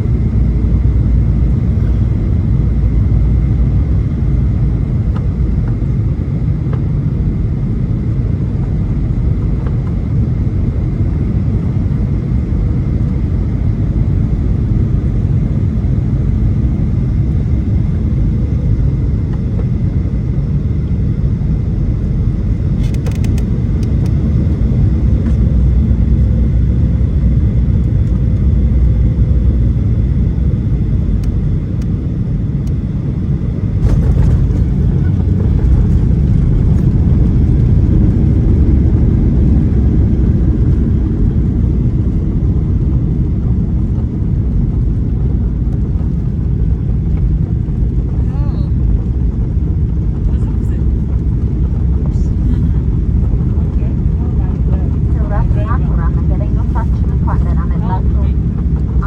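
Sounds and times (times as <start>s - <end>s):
aircraft engines rumbling: 0.0s - 59.0s
airflow over fuselage: 0.0s - 59.0s
crackle of clicks: 22.8s - 24.2s.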